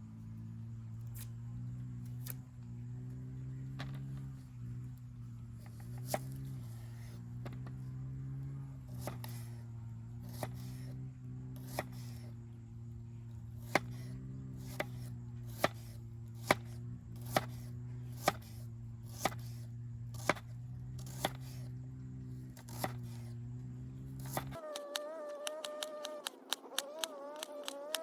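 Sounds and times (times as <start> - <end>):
knife chopping on cutting board: 11.6 - 12.0, 14.6 - 18.6, 19.2 - 19.5, 21.1 - 21.6, 22.7 - 23.1.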